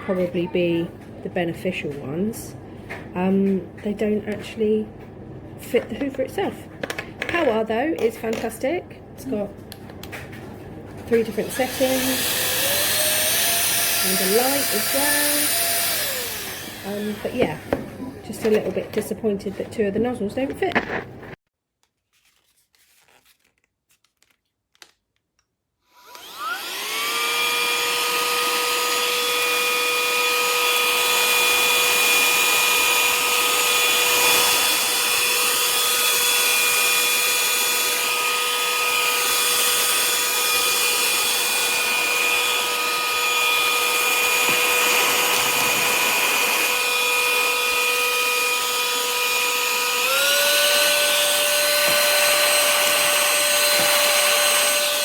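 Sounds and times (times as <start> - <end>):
handheld vacuum cleaner motor whine: 11.2 - 18.7, 25.9 - 55.0.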